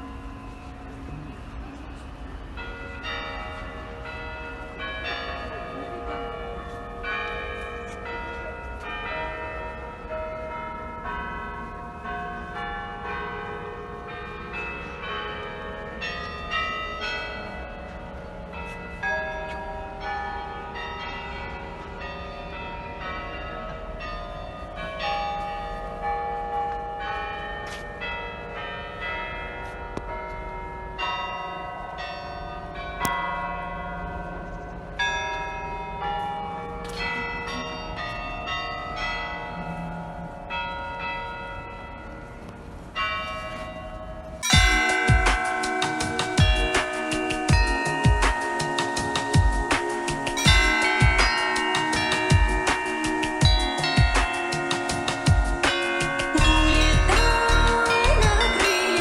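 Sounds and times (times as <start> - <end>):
church bells pealing: 0.0 - 59.0.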